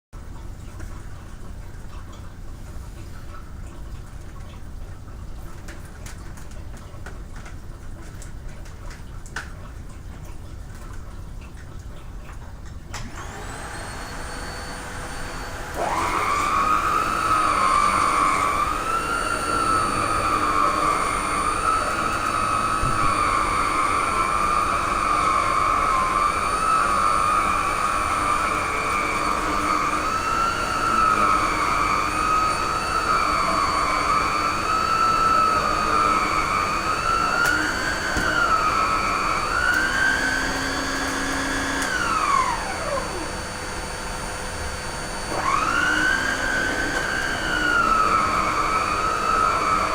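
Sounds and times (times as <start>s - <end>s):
vacuum cleaner motor whining: 13.0s - 49.9s.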